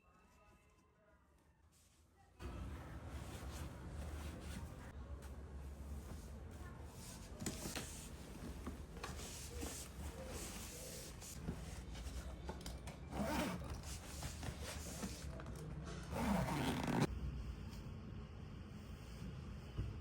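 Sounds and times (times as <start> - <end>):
rustling and rubbing: 5.8 - 12.3, 13.2 - 15.4.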